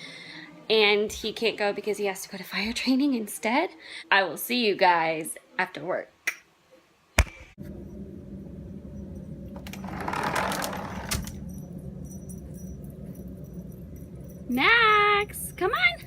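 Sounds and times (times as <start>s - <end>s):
low hum: 7.6s - 16.0s
keys jangling: 9.6s - 16.0s.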